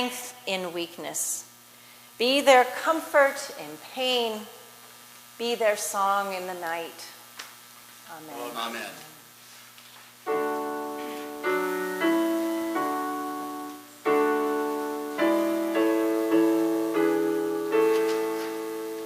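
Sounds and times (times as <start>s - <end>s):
piano chords: 10.2s - 19.0s.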